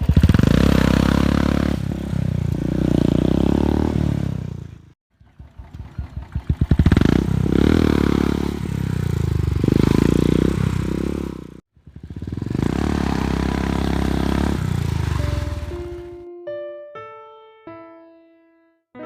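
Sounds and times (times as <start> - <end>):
single-cylinder engine thumping: 5.2 - 11.2.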